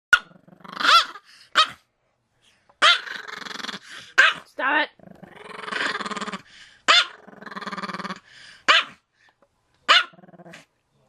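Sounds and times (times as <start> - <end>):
dog growling: 0.2 - 1.2, 2.9 - 4.4, 5.0 - 8.3, 10.0 - 10.7
small dog barking: 4.2 - 4.5, 8.7 - 8.9, 9.9 - 10.2.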